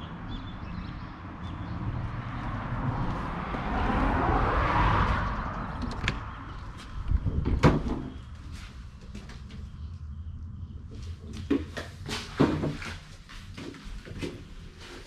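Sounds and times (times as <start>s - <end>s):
car passing by: 1.4s - 7.0s.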